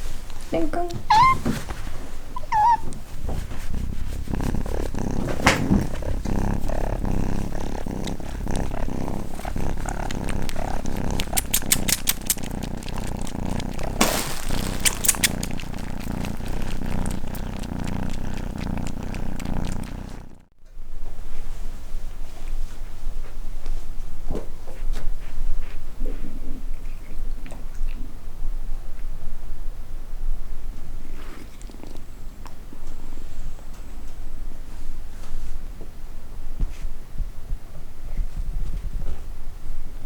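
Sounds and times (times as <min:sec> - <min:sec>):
cat purring: 0:00.0 - 0:20.5.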